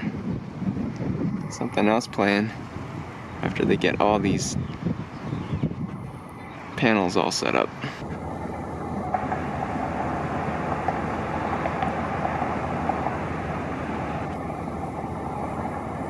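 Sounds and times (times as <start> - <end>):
car road noise: 0.0 - 16.0.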